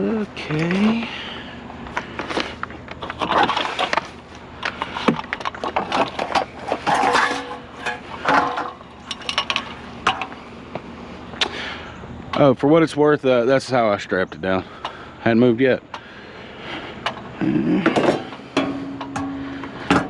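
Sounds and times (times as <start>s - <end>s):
scrap clattering and scraping: 1.9s - 10.4s, 17.9s - 20.0s.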